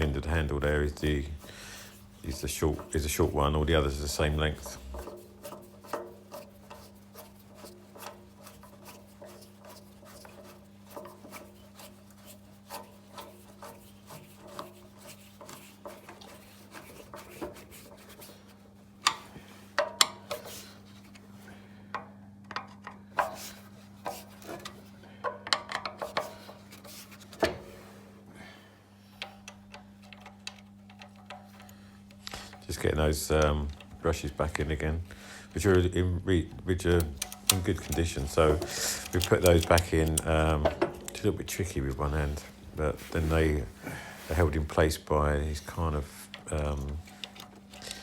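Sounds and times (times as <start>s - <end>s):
screwdriver turning and scraping: 0.0s - 21.2s, 22.5s - 27.6s, 29.2s - 34.8s, 36.8s - 43.6s, 44.3s - 48.0s
steady low hum: 0.0s - 48.0s
tools knocking and tapping: 19.1s - 20.6s, 21.9s - 26.6s, 37.2s - 41.3s.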